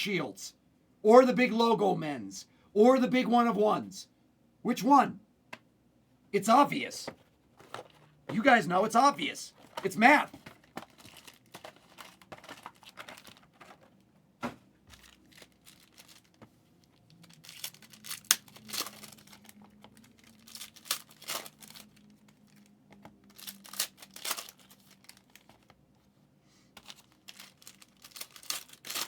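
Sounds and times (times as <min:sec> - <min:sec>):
card wrappers crinkling and tearing: 0:07.6 - 0:08.6, 0:09.2 - 0:14.0, 0:14.9 - 0:25.8, 0:26.8 - 0:29.0.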